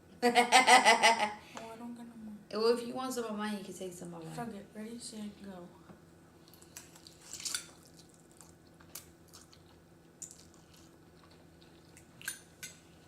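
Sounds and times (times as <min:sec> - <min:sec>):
low steady hum: 0:00.0 - 0:13.0
wet chewing noises: 0:06.4 - 0:13.0.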